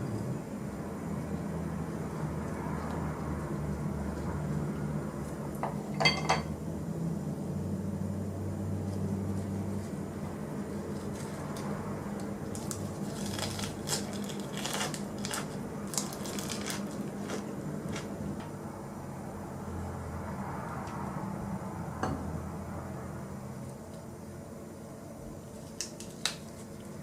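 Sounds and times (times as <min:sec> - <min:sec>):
low steady hum: 0:00.0 - 0:27.0
dishes and utensils clinking: 0:06.0 - 0:06.5.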